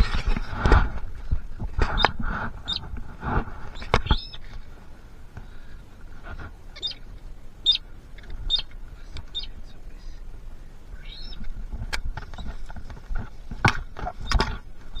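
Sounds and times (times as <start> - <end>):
small bird chirping: 1.9 - 2.8, 3.7 - 4.5, 6.7 - 10.2, 10.9 - 11.5, 14.2 - 15.0.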